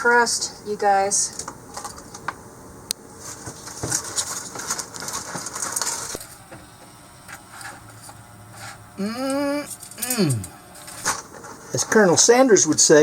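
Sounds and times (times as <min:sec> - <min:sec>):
crinkly rustle: 0:03.2 - 0:06.4.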